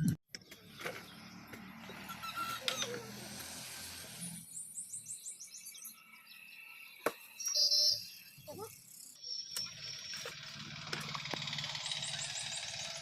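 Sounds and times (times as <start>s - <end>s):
bird chirping: 0.3s - 3.2s, 4.2s - 10.6s.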